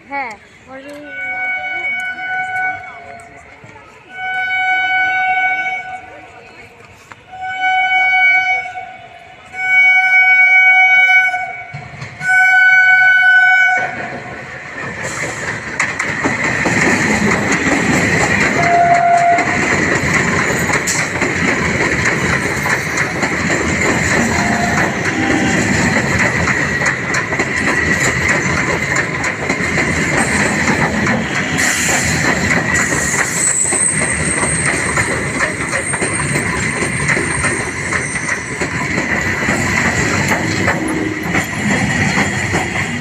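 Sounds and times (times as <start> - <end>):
train rumbling past: 0.0 - 43.0
train horn blasts: 1.0 - 3.3, 4.1 - 6.2, 7.3 - 14.1, 18.6 - 19.7, 24.2 - 25.9
wheels clattering on rail: 9.5 - 43.0.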